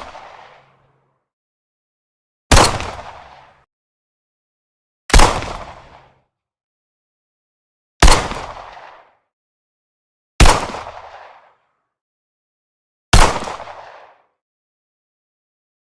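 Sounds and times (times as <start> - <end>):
pistol shots echoing: 2.5 - 3.4.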